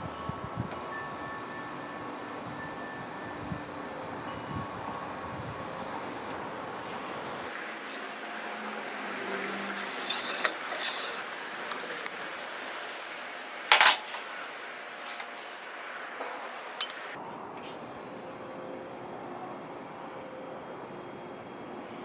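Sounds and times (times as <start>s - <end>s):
metal clinking against metal: 7.5s - 17.2s
steady hiss: 7.5s - 17.2s.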